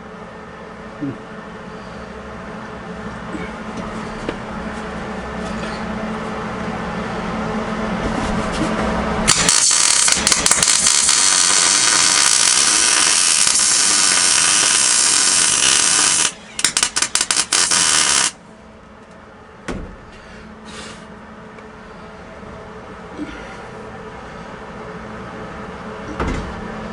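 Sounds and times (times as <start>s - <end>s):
welder crackling hiss: 9.3s - 18.4s
welder sputtering bursts: 9.3s - 18.4s.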